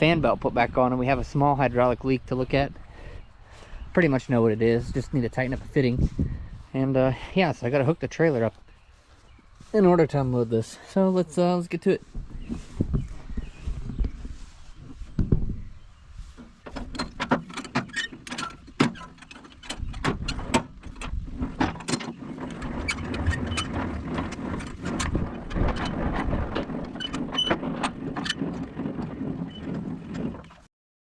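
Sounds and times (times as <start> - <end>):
metal clanks and knocks: 16.4 - 30.6
low engine rumble: 19.6 - 30.5.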